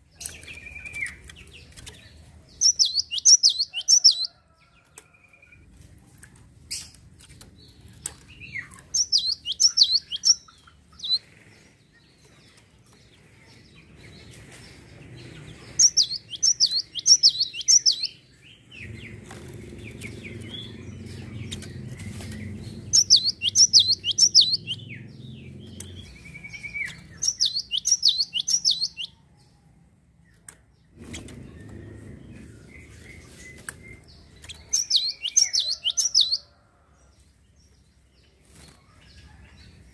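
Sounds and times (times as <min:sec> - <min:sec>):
songbird chirping: 0:00.0 - 0:39.9
low rumbling background noise: 0:04.3 - 0:39.9.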